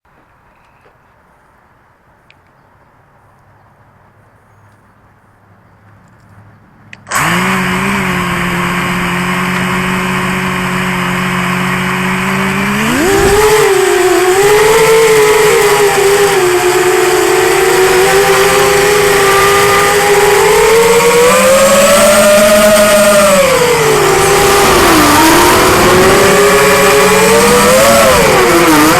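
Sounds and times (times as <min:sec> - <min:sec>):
drone motors whining: 0:07.0 - 0:28.9.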